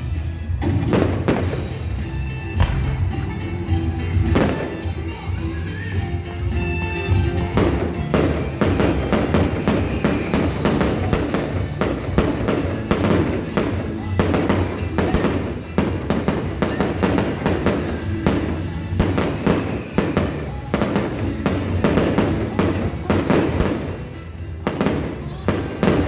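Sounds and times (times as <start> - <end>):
fireworks bursting: 0.0 - 26.0
loud music: 0.0 - 26.0.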